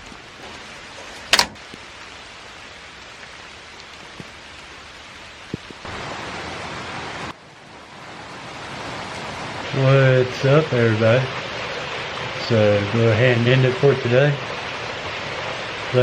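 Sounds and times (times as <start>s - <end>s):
faint drips: 0.0s - 5.9s
rain hiss: 0.0s - 16.0s.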